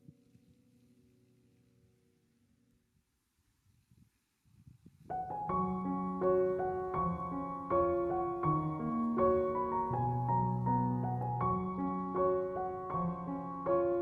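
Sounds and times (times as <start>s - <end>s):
faint low rustling: 0.0s - 14.0s
piano music: 5.1s - 14.0s.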